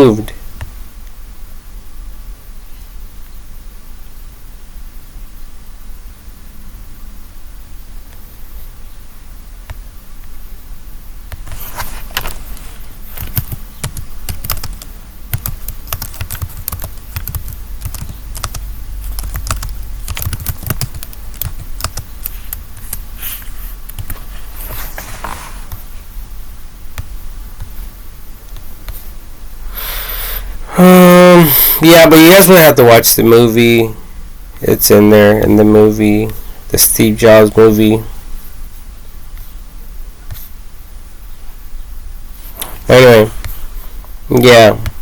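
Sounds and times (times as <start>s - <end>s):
low steady hum: 0.0s - 45.0s
keyboard typing: 13.1s - 23.1s, 23.9s - 24.2s.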